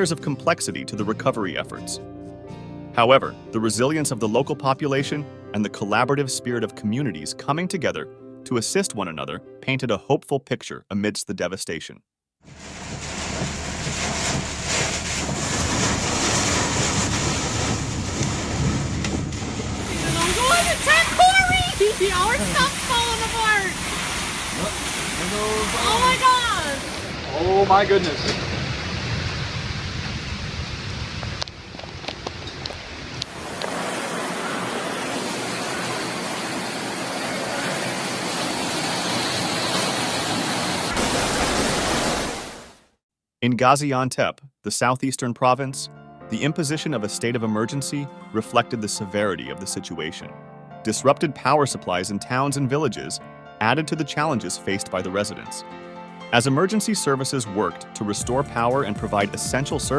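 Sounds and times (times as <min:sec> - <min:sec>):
heavy rainstorm roar: 0:12.5 - 0:42.7
storm wind on microphone: 0:12.6 - 0:23.3, 0:26.1 - 0:36.6.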